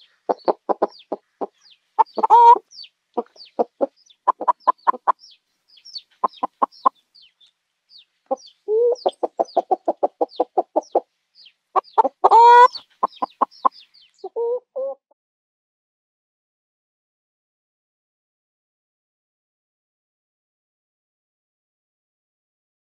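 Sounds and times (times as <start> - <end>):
chicken squawking: 0.0 - 5.2, 6.2 - 7.0, 8.3 - 11.0, 11.8 - 15.0
chickens clucking: 0.0 - 7.4, 8.0 - 15.0.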